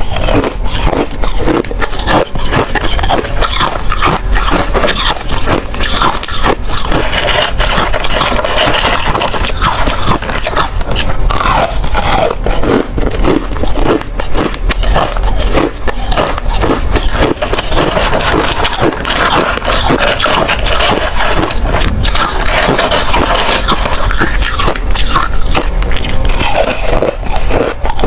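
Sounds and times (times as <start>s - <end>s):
ice cubes being chewed: 0.0s - 28.0s.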